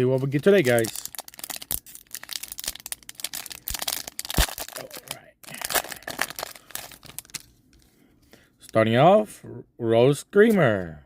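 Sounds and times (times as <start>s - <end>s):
plastic wrapper crinkling and tearing: 0.0s - 7.9s.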